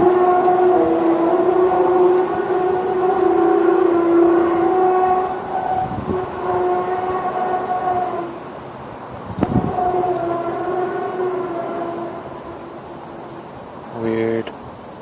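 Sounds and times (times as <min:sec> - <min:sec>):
low horn-like drone: 0:00.0 - 0:14.4.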